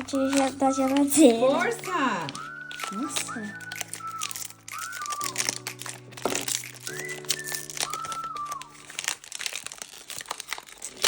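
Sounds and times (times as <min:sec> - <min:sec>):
background music of gliding notes: 0:00.0 - 0:10.1
plastic wrapper crinkling: 0:00.0 - 0:11.0.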